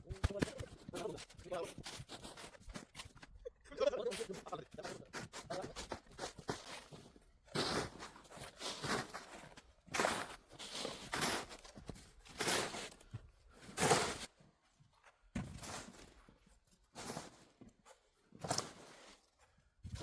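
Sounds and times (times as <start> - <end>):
footsteps crunching in snow: 4.1 - 14.3, 16.9 - 17.7, 18.3 - 19.3.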